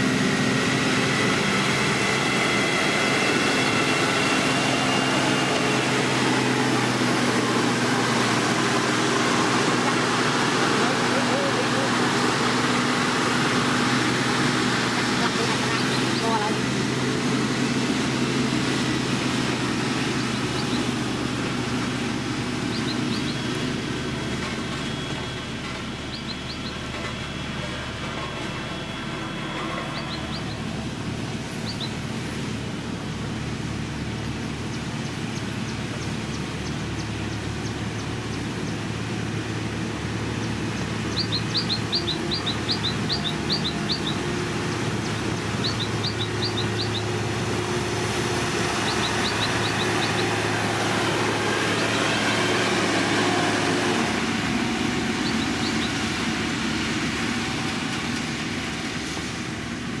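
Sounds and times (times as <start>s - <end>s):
diesel engine of heavy machinery: 0.0s - 60.0s
bird chirping: 15.1s - 16.7s, 19.7s - 23.8s, 24.8s - 27.0s, 29.6s - 32.1s, 40.0s - 52.0s, 54.1s - 56.9s.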